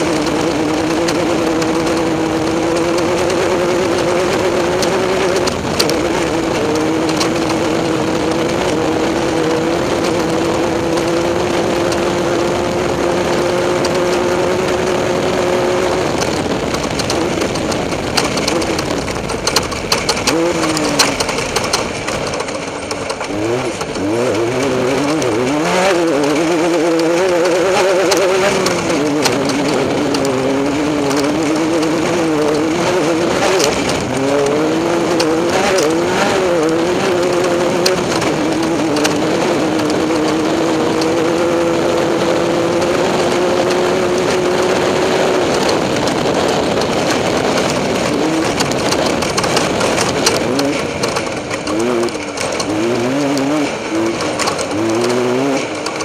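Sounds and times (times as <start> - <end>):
engine revving hard: 20.0 - 22.3, 23.2 - 56.0.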